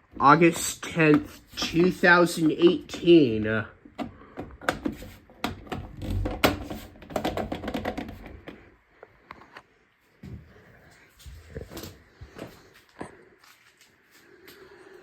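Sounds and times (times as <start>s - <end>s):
hard objects clicking and knocking: 3.8s - 8.7s.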